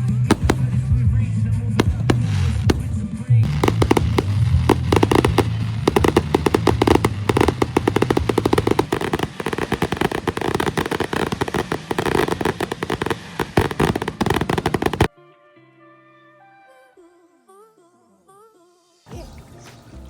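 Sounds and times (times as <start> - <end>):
fireworks crackling and banging: 0.0 - 15.1.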